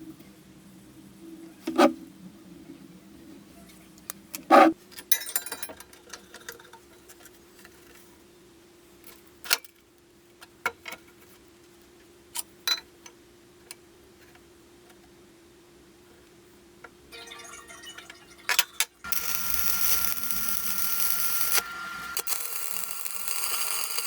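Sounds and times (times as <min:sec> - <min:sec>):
faint steady hum: 0:18.2 - 0:24.0.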